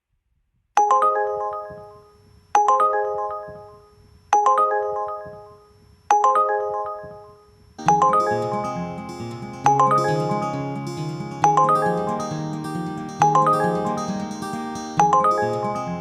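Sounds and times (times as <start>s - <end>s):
bell-like alert chime: 4.4s - 16.0s
song backing music: 7.8s - 16.0s.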